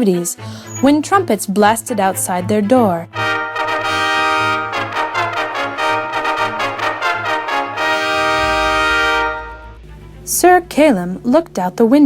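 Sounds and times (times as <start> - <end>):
trumpet fanfare: 3.1 - 9.8.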